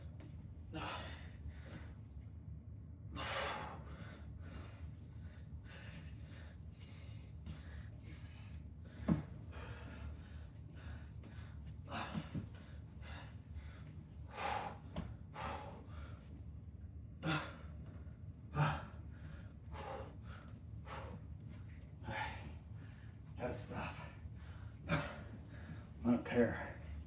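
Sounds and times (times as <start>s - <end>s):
man breathing hard and gasping: 0.7s - 2.0s, 3.1s - 16.3s, 17.2s - 17.9s, 18.5s - 21.3s, 23.9s - 26.0s.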